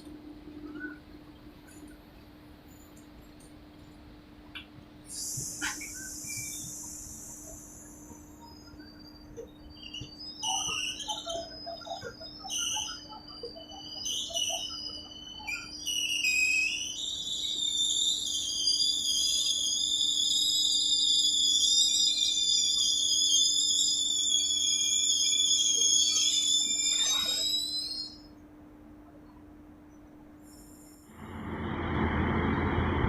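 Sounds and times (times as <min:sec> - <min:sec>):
train brakes squealing: 0:05.1 - 0:28.3
faint steady hum: 0:28.2 - 0:33.0.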